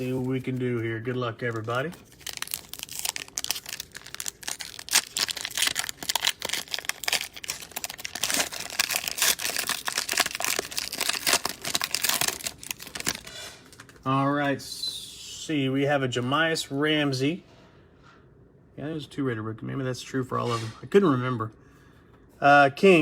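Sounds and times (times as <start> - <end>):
cellophane wrapper crinkling: 0.0 - 14.1.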